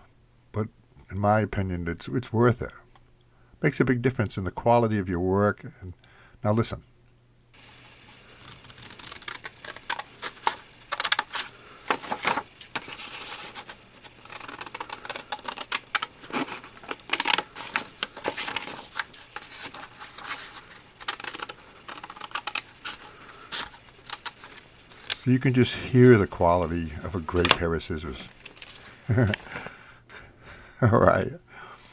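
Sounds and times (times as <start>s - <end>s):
scissors cutting paper: 7.7s - 25.2s.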